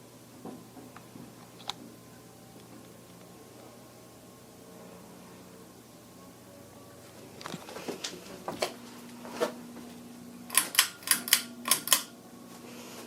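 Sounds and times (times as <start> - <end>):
ceiling fan motor humming: 0.0 - 13.0
sharp clicks: 10.5 - 12.1.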